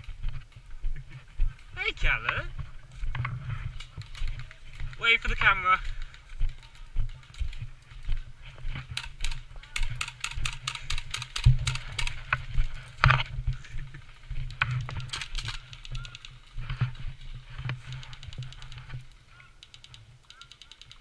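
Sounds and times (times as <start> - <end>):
sharp clicks and snaps: 17.6 - 21.0.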